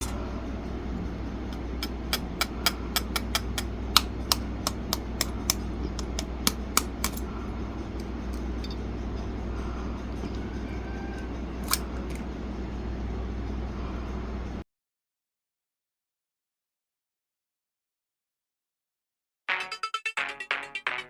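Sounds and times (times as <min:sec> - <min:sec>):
steady low hum: 0:00.0 - 0:14.6.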